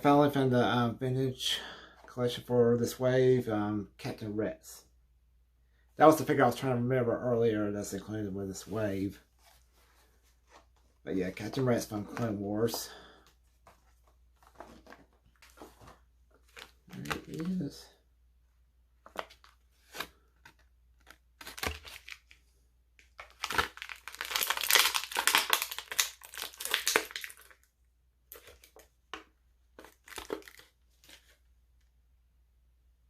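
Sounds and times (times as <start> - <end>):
cardboard packaging tearing: 19.8 - 22.4, 23.2 - 27.6, 29.8 - 31.3
plastic packaging crinkling: 23.0 - 27.7, 29.8 - 31.4.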